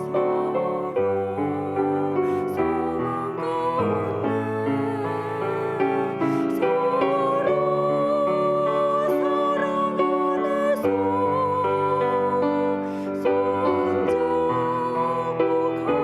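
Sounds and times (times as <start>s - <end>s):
piano accompaniment: 0.0s - 16.0s
woman singing a hymn: 0.0s - 16.0s.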